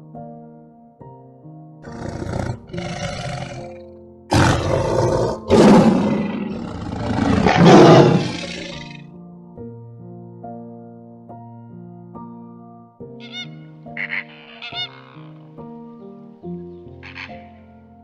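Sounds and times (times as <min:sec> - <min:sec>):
soft piano music: 0:00.0 - 0:18.0
big cat roaring: 0:01.8 - 0:09.0.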